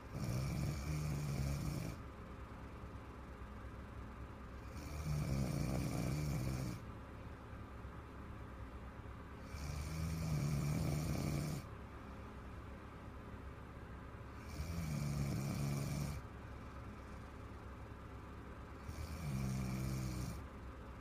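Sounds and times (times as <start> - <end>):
woman snoring: 0.0 - 2.0, 4.6 - 6.8, 9.4 - 11.7, 14.4 - 16.2, 18.8 - 20.4
quiet breathing: 14.3 - 18.0.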